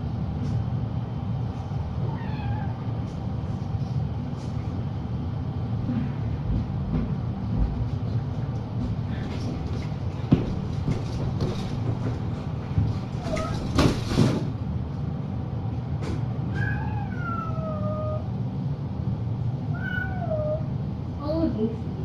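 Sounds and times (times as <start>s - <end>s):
steady low hum: 0.0s - 22.0s
cat meowing: 2.1s - 2.8s, 16.5s - 18.3s, 19.7s - 20.7s.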